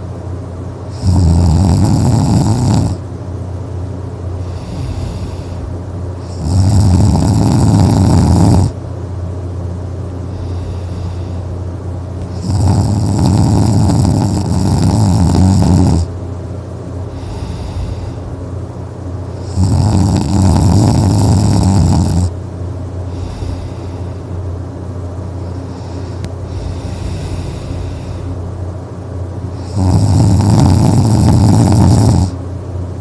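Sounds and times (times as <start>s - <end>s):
steady low hum: 0.0s - 33.0s
person snoring: 0.9s - 3.0s, 4.4s - 8.8s, 10.3s - 11.5s, 12.3s - 16.1s, 17.1s - 18.3s, 19.4s - 22.4s, 23.1s - 24.2s, 25.4s - 28.4s, 29.6s - 32.4s
quiet breaths: 4.3s - 8.7s, 10.2s - 11.6s, 17.1s - 18.4s, 23.0s - 24.4s, 25.4s - 28.4s.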